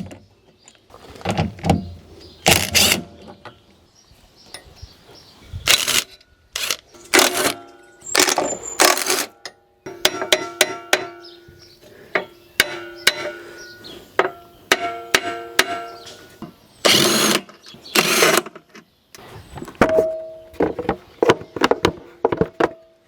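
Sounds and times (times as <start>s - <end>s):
metal tools knocking on steel: 9.4s - 11.6s.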